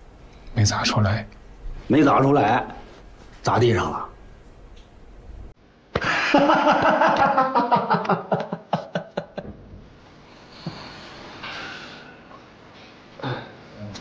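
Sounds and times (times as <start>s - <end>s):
men laughing loudly: 6.0s - 9.5s.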